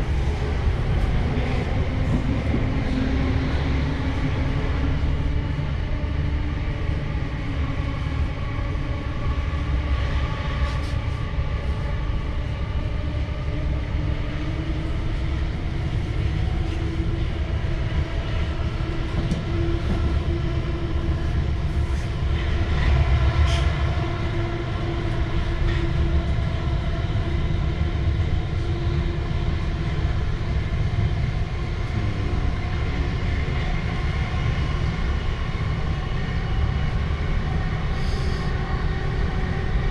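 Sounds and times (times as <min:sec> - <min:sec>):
train wheels rumbling on track: 0:00.0 - 0:39.9
train motor hum: 0:31.7 - 0:33.7.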